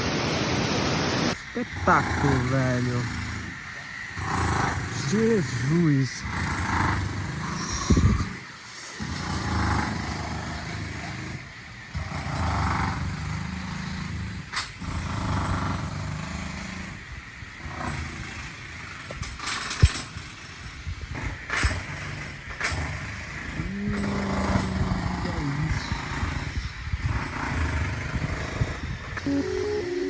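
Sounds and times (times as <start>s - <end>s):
waterfall rushing: 0.0s - 3.3s
wind buffeting microphone: 6.4s - 8.5s, 23.5s - 30.0s.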